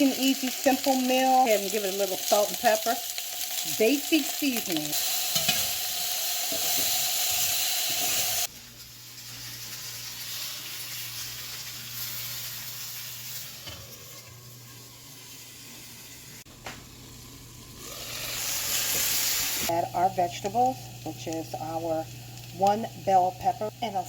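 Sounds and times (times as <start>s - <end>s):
potatoes sizzling in oil: 0.0s - 24.0s.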